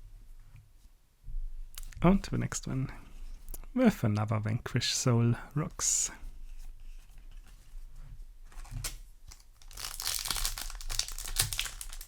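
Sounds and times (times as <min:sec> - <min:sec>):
foil wrapper crinkling: 0:08.5 - 0:12.0.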